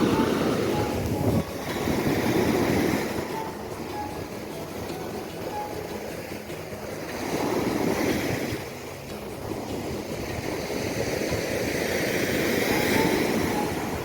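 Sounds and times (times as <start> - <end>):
waves washing onto beach: 0.0 - 14.0
wind on microphone: 0.0 - 14.0.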